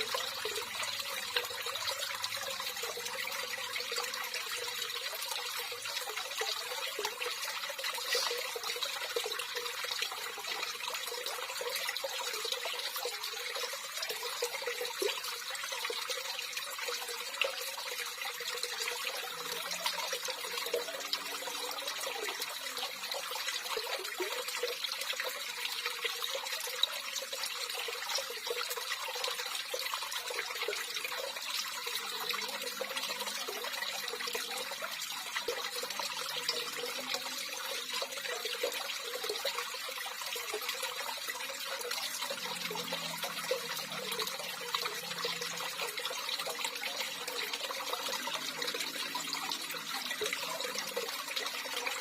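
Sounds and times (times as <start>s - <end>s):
water trickling: 0.0s - 52.0s.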